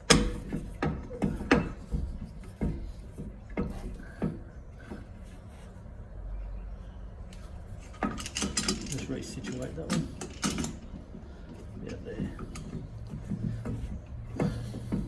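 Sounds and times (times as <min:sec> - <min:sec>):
clamp metal clicks and knocks: 0:00.0 - 0:02.0, 0:08.0 - 0:11.0.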